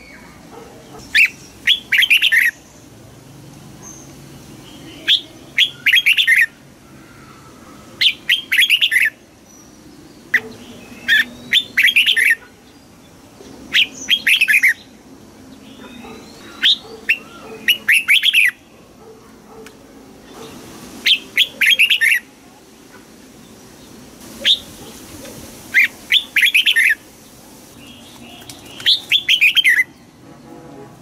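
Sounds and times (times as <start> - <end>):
bird singing: 0.0 - 2.9, 3.8 - 19.7, 20.3 - 22.3, 25.7 - 27.0, 27.8 - 30.2.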